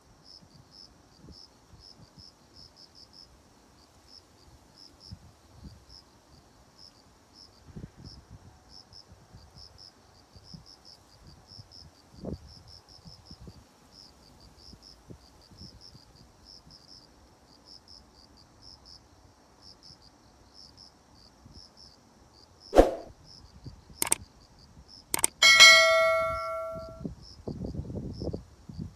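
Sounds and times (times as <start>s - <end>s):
sharp clicks: 25.2s - 26.9s.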